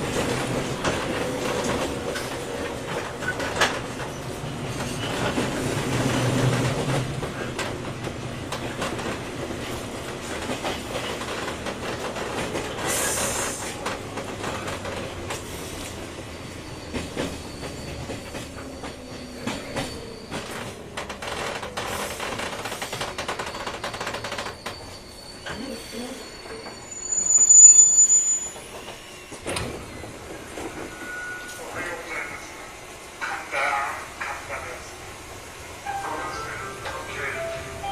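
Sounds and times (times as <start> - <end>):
high-pitched wheel squeal: 23.5 - 29.2.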